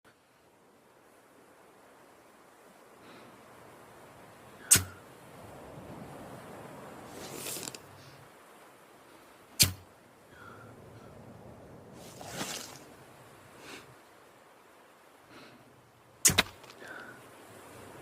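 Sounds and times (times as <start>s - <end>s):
crossbow shot snap and thud: 4.7s - 5.0s, 9.6s - 9.8s, 16.2s - 16.6s
scraping rustle: 7.1s - 8.2s, 12.0s - 12.9s.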